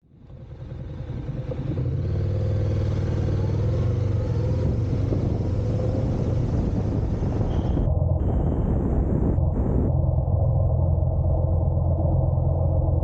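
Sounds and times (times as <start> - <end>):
motorcycle engine rumbling: 0.2 - 10.0.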